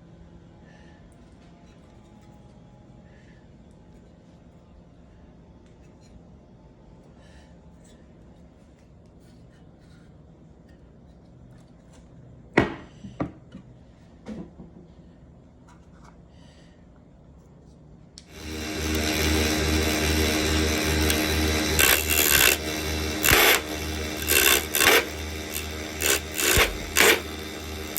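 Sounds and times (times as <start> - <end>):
loud rasping bursts: 18.3 - 27.9
wood lathe motor humming: 18.3 - 27.9.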